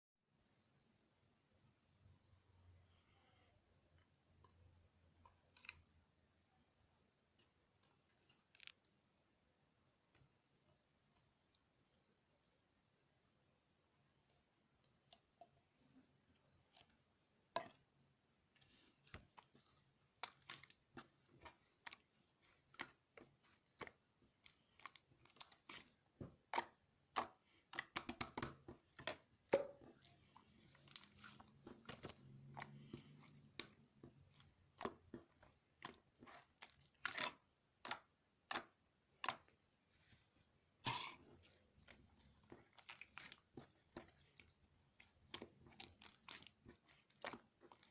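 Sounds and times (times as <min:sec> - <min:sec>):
crunchy food being chewed: 0:40.8 - 0:47.9.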